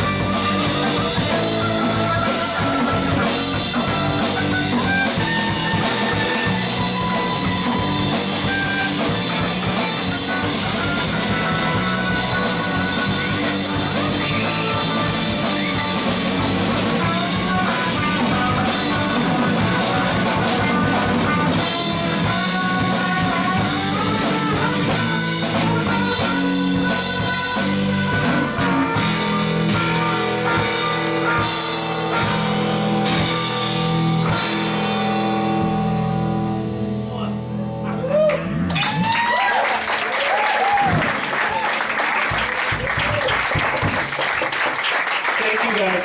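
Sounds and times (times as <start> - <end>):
electric guitars: 0.0 - 44.2
bass guitar: 0.0 - 44.9
drum kit: 0.0 - 46.0.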